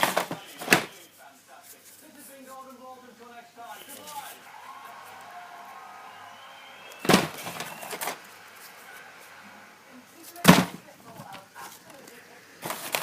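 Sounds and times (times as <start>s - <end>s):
fireworks banging and crackling: 6.8s - 8.4s.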